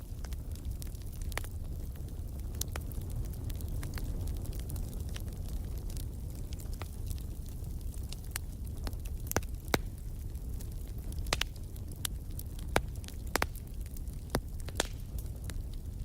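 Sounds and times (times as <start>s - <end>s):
fire crackling and popping: 0.0s - 16.0s
low rumble of flames: 0.0s - 16.0s.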